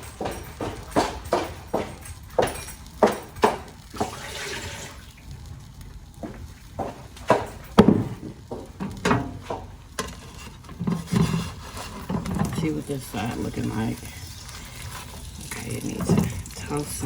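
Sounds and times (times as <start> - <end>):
sharp knocks and clatters: 0.0 - 4.2, 6.8 - 11.4.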